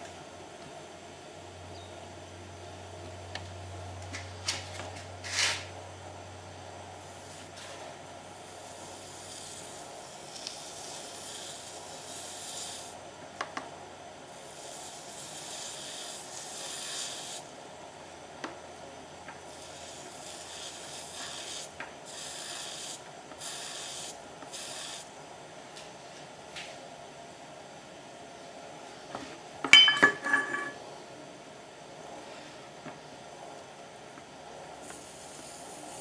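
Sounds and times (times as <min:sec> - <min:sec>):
scrubbing hiss on steel: 0:08.4 - 0:13.0, 0:14.3 - 0:17.5, 0:19.5 - 0:25.1, 0:34.8 - 0:36.0.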